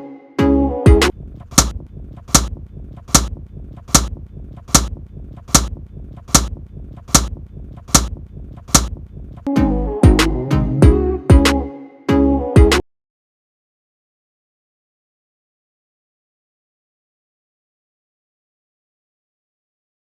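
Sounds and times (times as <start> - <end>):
low steady rumble: 1.1 - 10.0
sharp percussive hits: 1.5 - 9.0.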